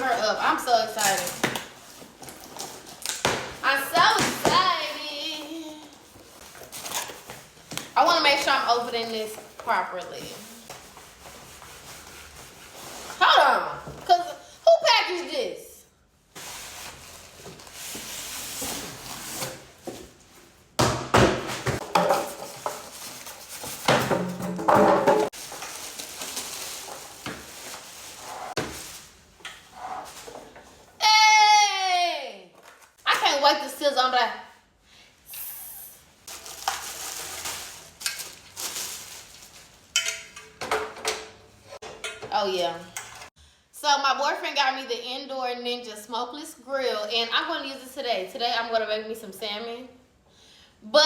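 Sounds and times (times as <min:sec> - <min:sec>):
cardboard packaging rustling: 0:00.8 - 0:13.2, 0:16.4 - 0:20.3, 0:21.6 - 0:24.0, 0:25.2 - 0:30.9, 0:36.2 - 0:40.0
packaging rustling: 0:22.2 - 0:23.9, 0:25.3 - 0:29.3, 0:36.3 - 0:40.0.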